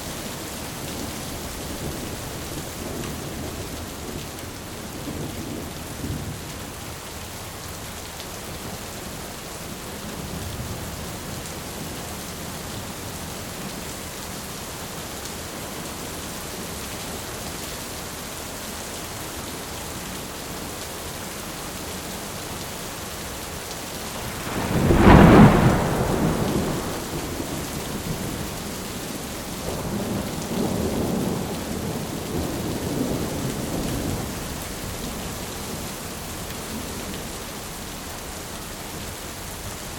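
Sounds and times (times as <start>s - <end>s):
heavy rain: 0.0s - 39.9s
thunder rumbling: 0.8s - 6.4s, 24.0s - 35.0s.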